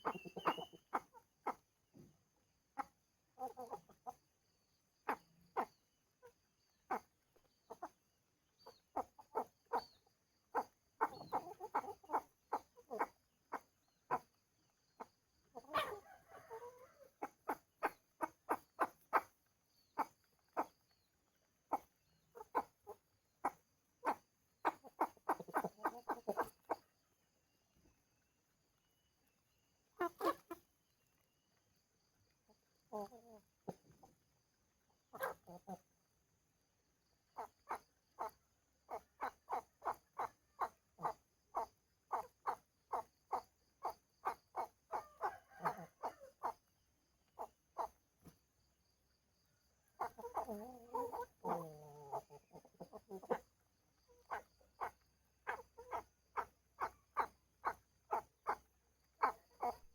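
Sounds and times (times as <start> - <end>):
chickens clucking: 0.0 - 2.2, 2.8 - 4.2, 5.0 - 8.0, 8.6 - 10.0, 10.6 - 14.3, 15.0 - 20.9, 21.7 - 26.9, 29.3 - 31.4, 32.5 - 34.2, 35.1 - 36.0, 37.3 - 38.3, 38.9 - 46.6, 50.0 - 53.5, 54.1 - 59.9.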